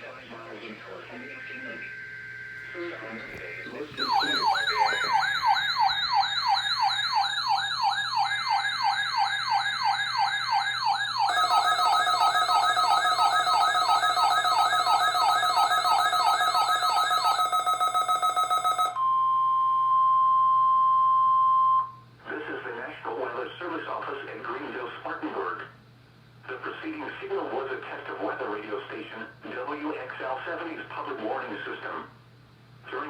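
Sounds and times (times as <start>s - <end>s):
steady warning alarm tone: 0.0s - 21.9s
buzzing two-tone alarm: 0.8s - 22.0s
falling siren-like alarm sweep: 1.0s - 19.2s.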